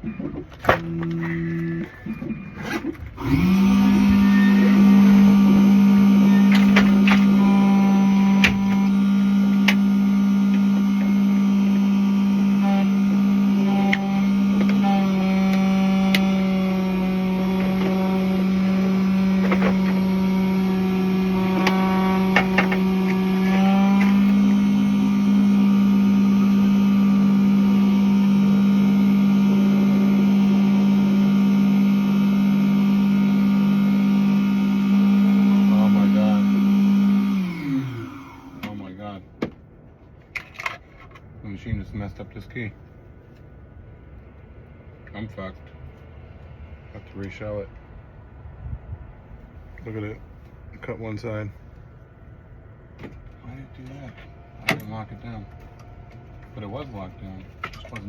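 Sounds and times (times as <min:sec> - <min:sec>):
key-cutting machine humming: 0:00.2 - 0:38.8.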